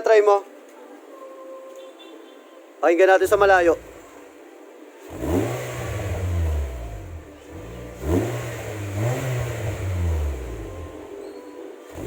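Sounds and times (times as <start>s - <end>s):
car engine revving: 3.2s - 4.2s, 5.1s - 11.2s.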